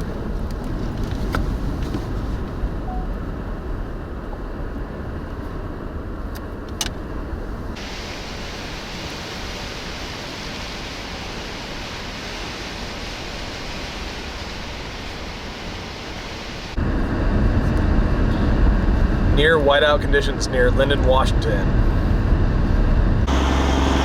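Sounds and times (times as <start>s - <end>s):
wind rumbling on microphone: 0.0s - 24.0s
high hiss: 7.8s - 16.8s.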